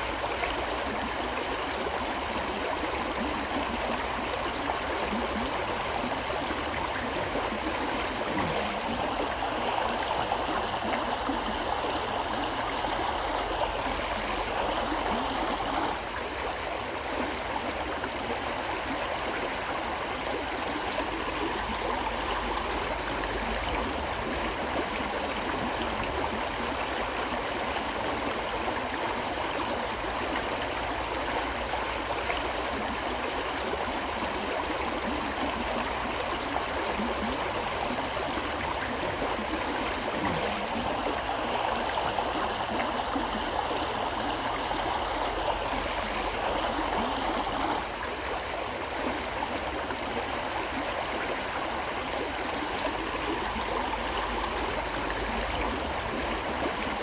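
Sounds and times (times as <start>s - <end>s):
river flowing: 0.0s - 57.0s.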